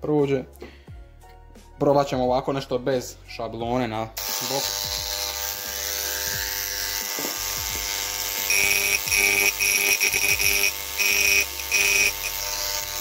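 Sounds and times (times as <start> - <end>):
electric engraving pen buzzing: 4.2 - 13.0.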